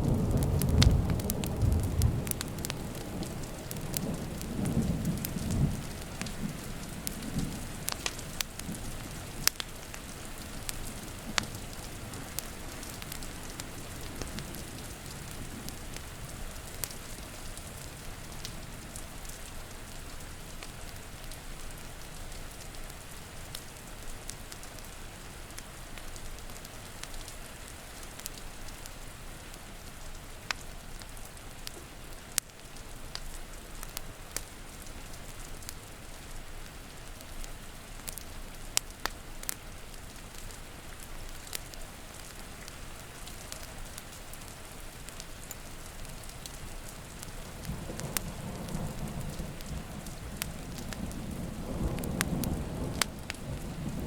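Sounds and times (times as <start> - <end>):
low rumble of thunder: 0.0 - 9.5, 47.2 - 54.0
steady rain: 0.0 - 54.0
wood fire crackling: 0.0 - 54.0.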